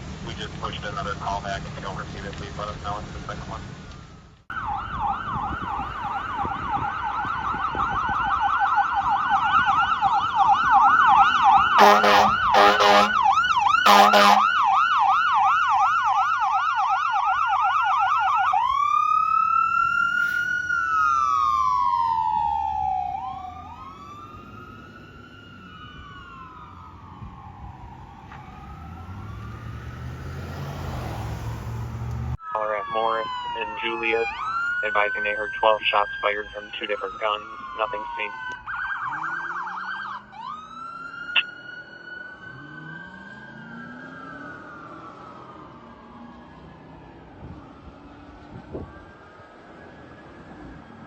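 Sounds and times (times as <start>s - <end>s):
fire engine siren: 0.0s - 51.0s
air horn blasts: 11.8s - 14.5s.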